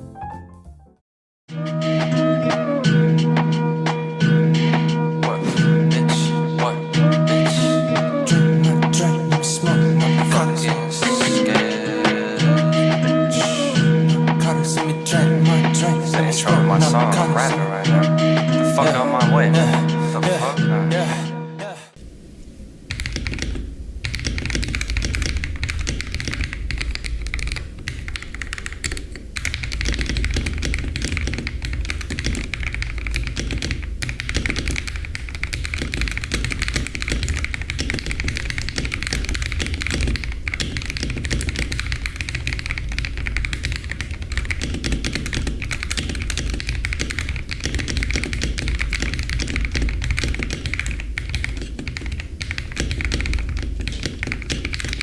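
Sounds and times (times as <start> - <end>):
mechanical keyboard typing: 22.9 - 55.0.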